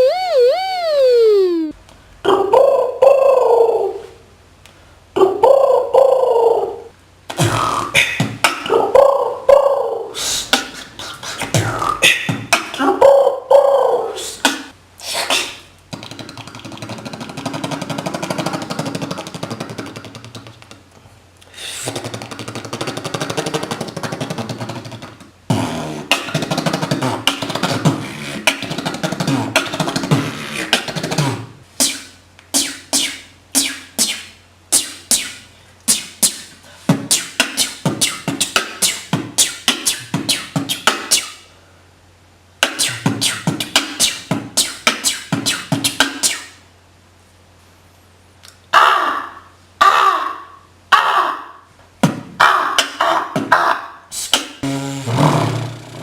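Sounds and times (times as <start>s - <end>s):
beatboxing mouth sound effects: 0.0s - 1.8s, 7.3s - 41.5s, 42.6s - 46.6s, 52.0s - 56.0s.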